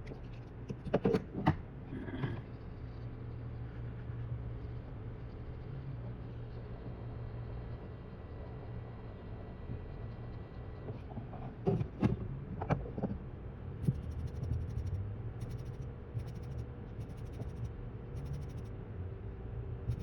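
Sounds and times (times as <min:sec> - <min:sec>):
low steady hum: 0:01.7 - 0:20.0.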